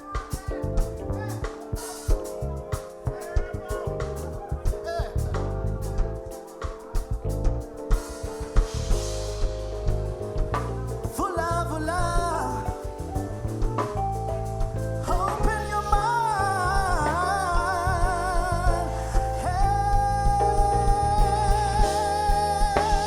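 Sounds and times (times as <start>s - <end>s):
live band playing: 0.0s - 23.0s
person singing with vibrato: 11.1s - 13.9s, 15.0s - 23.0s.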